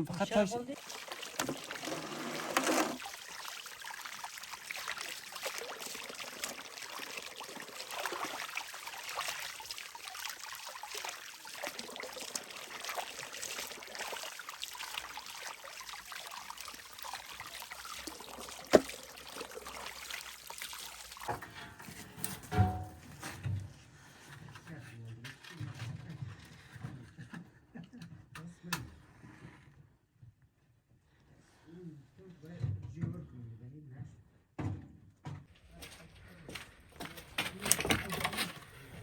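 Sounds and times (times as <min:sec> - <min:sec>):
water trickling: 0:00.0 - 0:23.2.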